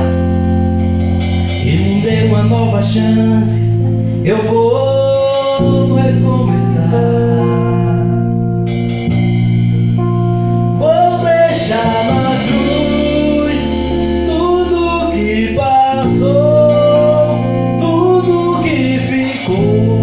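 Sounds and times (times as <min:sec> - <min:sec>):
guitars and bass playing chords: 0:00.0 - 0:20.0
person singing long notes: 0:01.6 - 0:08.2, 0:10.7 - 0:20.0.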